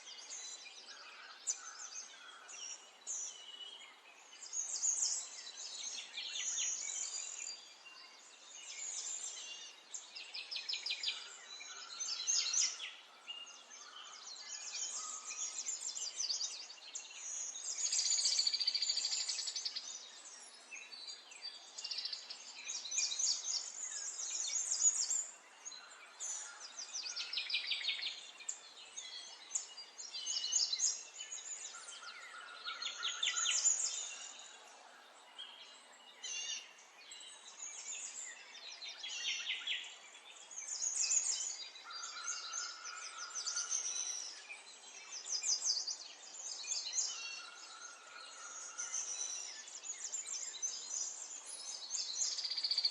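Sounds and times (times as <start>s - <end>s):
songbirds chirping and trilling: 0.0s - 52.9s.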